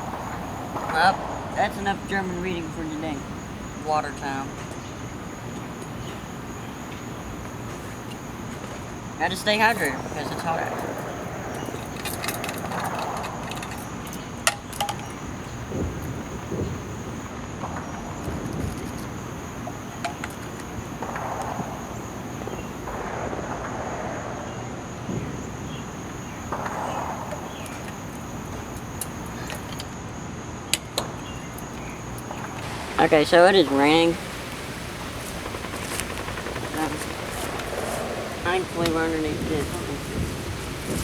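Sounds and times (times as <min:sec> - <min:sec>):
insects droning: 0:00.0 - 0:41.0
soft rustling: 0:32.1 - 0:41.0.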